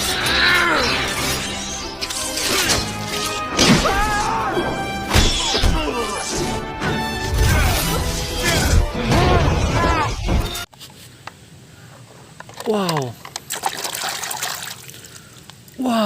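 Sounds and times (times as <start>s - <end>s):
background music: 0.0s - 10.7s.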